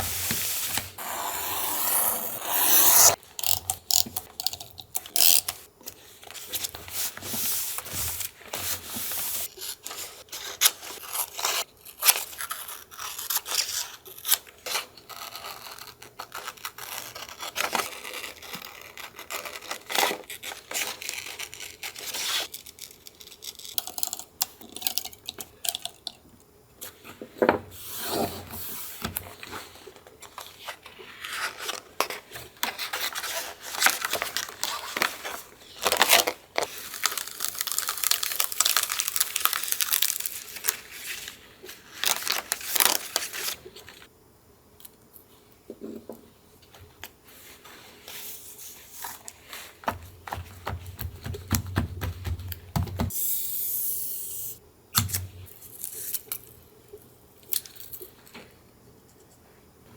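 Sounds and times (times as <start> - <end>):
paper rubbing scrape: 0.0 - 3.2
paper crinkling and tapping: 49.0 - 53.1.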